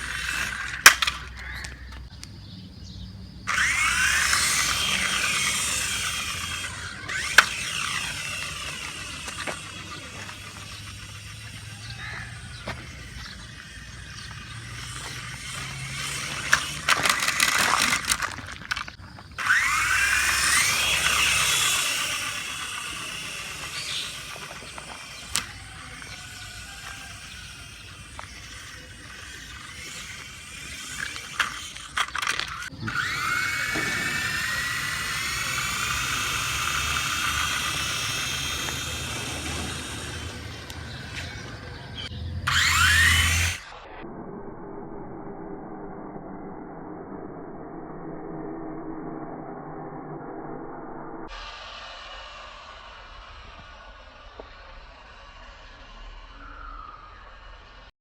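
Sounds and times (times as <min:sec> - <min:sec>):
sharp clicks: 0:00.0 - 0:02.4, 0:03.5 - 0:43.6
rc helicopter motor whining: 0:00.0 - 0:02.6, 0:03.4 - 0:57.9.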